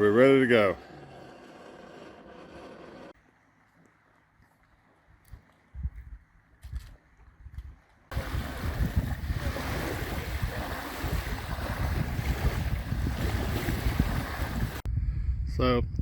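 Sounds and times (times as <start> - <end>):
rushing wind: 5.7 - 16.0
wind buffeting microphone: 5.7 - 16.0
surf: 8.1 - 14.8.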